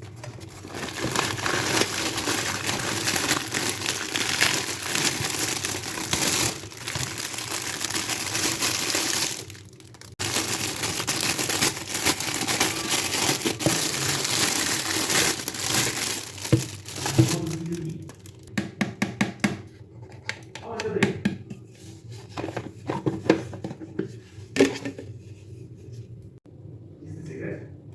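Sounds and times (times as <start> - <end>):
packaging crinkling and rustling: 0.0 - 18.5.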